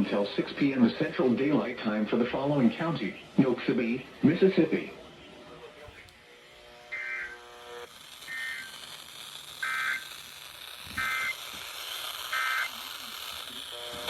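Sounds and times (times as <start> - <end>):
shrill two-tone digital chirps: 8.3 - 8.8, 9.6 - 10.1, 11.0 - 11.4.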